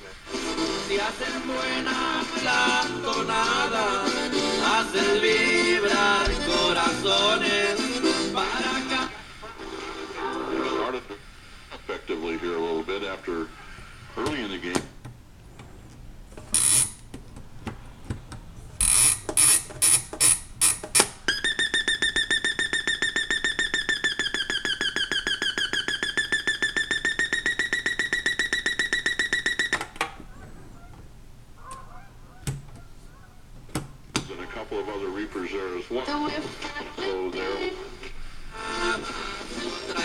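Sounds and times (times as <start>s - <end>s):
alarm clock buzzer: 16.5s - 17.0s, 18.8s - 23.8s, 25.8s - 29.9s.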